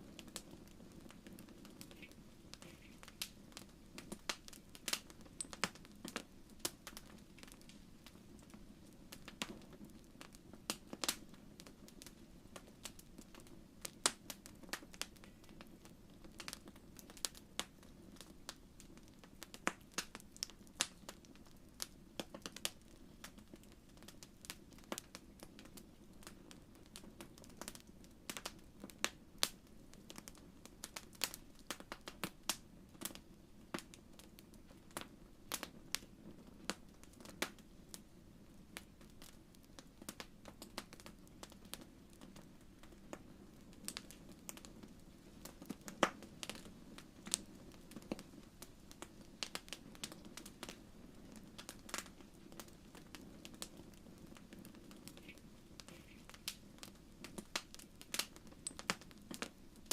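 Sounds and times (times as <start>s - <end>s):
fire crackling: 0.0s - 59.9s.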